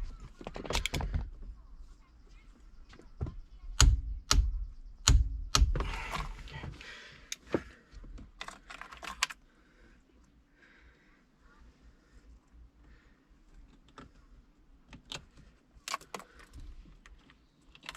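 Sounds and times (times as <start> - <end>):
tools clicking and knocking: 8.4 - 9.4.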